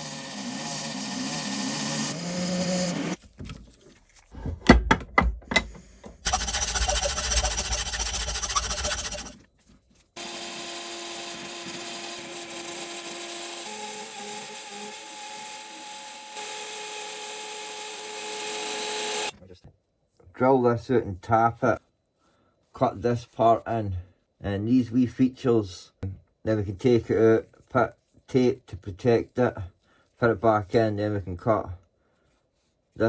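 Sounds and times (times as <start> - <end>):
metal lathe cutting: 0.0 - 3.2, 6.3 - 9.4, 10.2 - 19.3.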